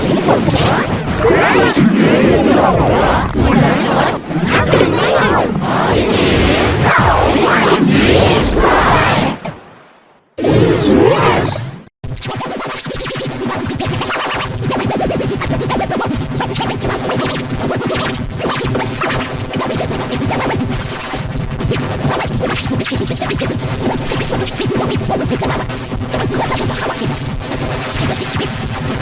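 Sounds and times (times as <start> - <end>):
distorted pitch-shifted music and voices: 0.0 - 9.3.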